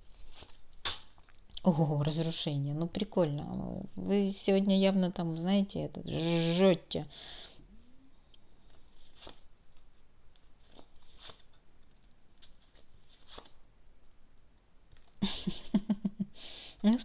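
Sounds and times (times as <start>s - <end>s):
cards rustling: 8.6s - 13.6s.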